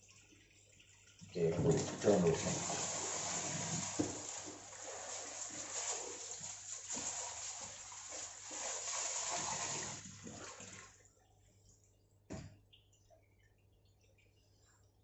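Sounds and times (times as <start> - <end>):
washing machine draining water: 0.0 - 11.2.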